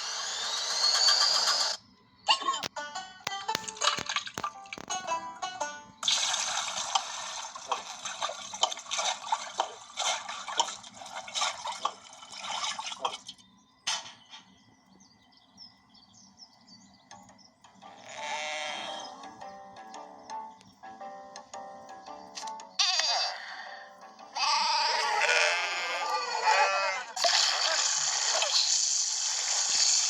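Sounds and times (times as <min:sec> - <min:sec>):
gushing splashing water: 0:06.0 - 0:13.2
sheep bleating: 0:24.4 - 0:27.2.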